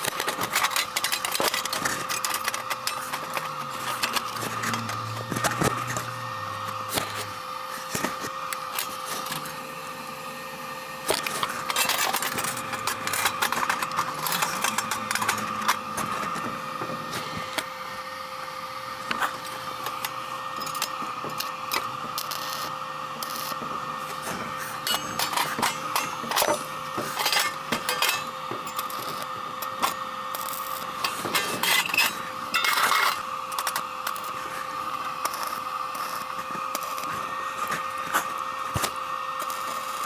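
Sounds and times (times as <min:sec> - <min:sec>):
welder hum: 0:00.0 - 0:40.0
welding arc crackling: 0:11.0 - 0:17.7, 0:18.9 - 0:37.2.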